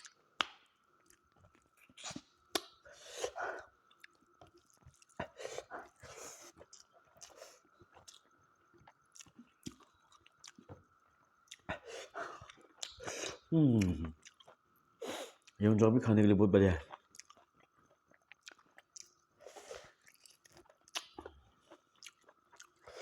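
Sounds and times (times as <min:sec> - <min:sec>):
person chewing food: 0:00.0 - 0:15.6, 0:16.8 - 0:23.0.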